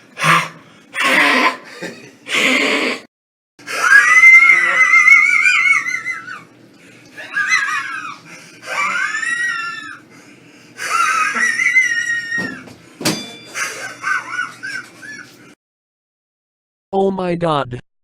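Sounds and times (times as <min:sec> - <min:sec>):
person wheezing laughter: 0:00.2 - 0:06.4, 0:07.2 - 0:10.0, 0:10.8 - 0:12.4, 0:13.5 - 0:15.6.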